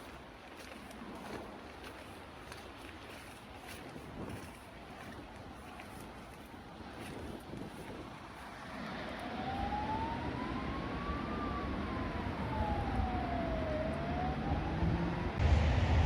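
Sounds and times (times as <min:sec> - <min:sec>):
city traffic rumble: 0:06.8 - 0:16.0
siren wailing: 0:08.8 - 0:15.4.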